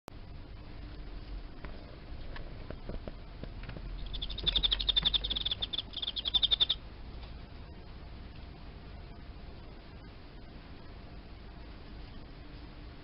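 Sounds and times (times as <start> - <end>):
field cricket chirping: 4.0 - 6.8.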